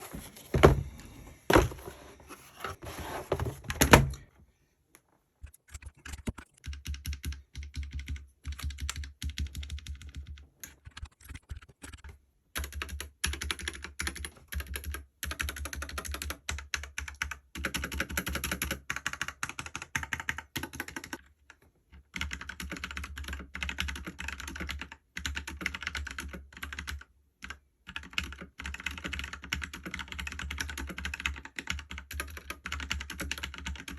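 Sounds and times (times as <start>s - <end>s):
mechanical keyboard typing: 5.9s - 21.2s, 22.0s - 33.9s.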